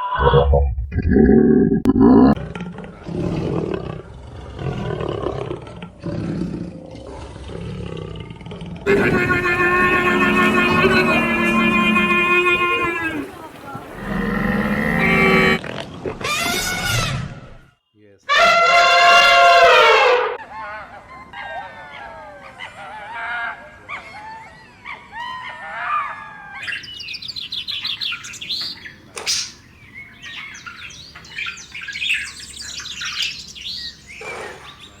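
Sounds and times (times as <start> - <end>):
birds chirping and singing: 8.9 - 15.6, 26.6 - 35.0
loud honking call: 8.9 - 15.6, 18.3 - 20.4.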